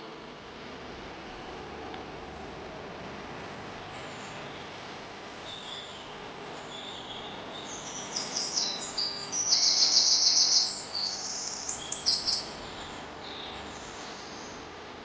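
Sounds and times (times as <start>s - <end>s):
rapid bird trill: 5.4s - 13.6s
songbirds chirping: 5.4s - 14.7s.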